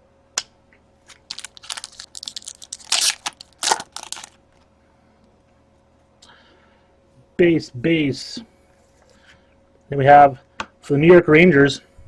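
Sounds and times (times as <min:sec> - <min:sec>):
cards rustling against each other: 0:01.0 - 0:04.4.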